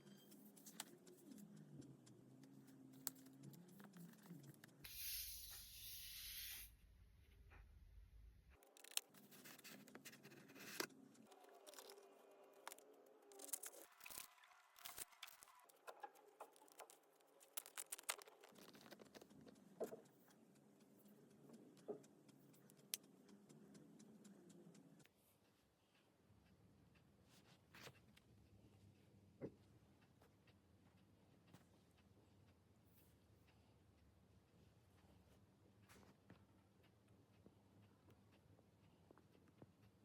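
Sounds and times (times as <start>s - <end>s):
brief hiss: 4.9s - 6.7s
packaging clicks taps and scrapes: 8.6s - 12.0s, 12.6s - 20.0s.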